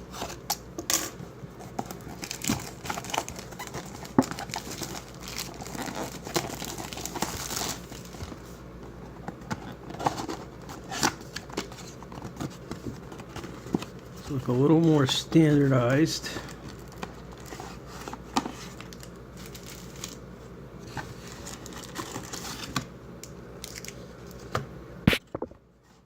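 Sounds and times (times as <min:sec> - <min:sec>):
packaging crinkling and tearing: 0:00.2 - 0:08.4, 0:16.4 - 0:20.2, 0:20.9 - 0:22.9, 0:23.6 - 0:24.5
packaging rustle: 0:01.0 - 0:08.6, 0:09.4 - 0:20.2, 0:20.8 - 0:22.9.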